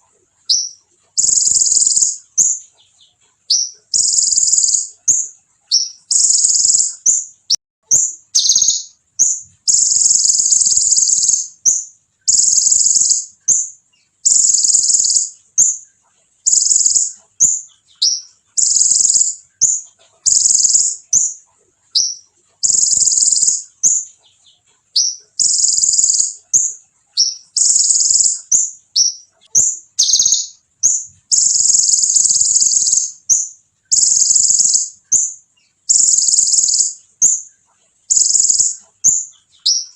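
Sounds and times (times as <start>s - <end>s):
bird rattling trill song: 0.0s - 39.9s
bird sharp chirps: 0.0s - 39.9s.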